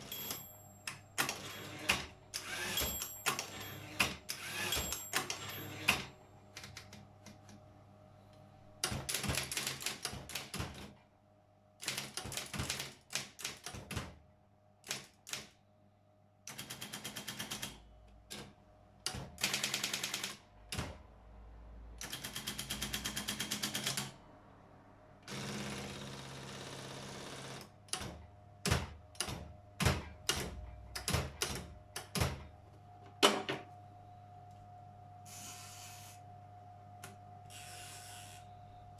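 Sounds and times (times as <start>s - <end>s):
typewriter whirring: 1.2s - 6.9s, 8.8s - 10.8s, 11.8s - 14.2s, 19.2s - 21.0s, 22.0s - 24.2s
electric typewriter keystrokes: 8.8s - 10.9s, 11.8s - 14.2s, 14.8s - 15.5s, 16.5s - 21.0s, 22.0s - 24.2s, 27.6s - 32.4s.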